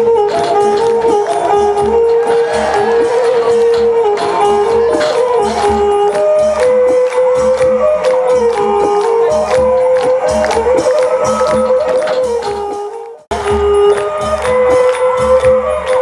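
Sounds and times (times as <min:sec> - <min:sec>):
held-note melody: 0:00.0 - 0:16.0
low drum beat: 0:00.1 - 0:06.2
sharp percussion strikes: 0:00.2 - 0:16.0.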